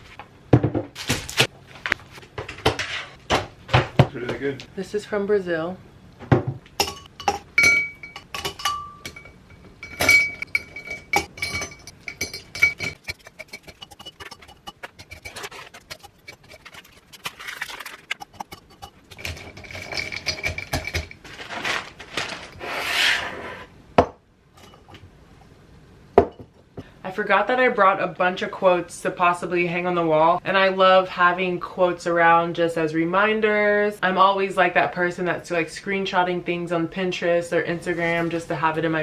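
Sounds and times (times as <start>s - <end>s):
dishes and cutlery clinking: 6.8s - 21.2s, 24.6s - 25.0s
rubbing scraping noises: 12.9s - 19.8s, 21.2s - 23.7s.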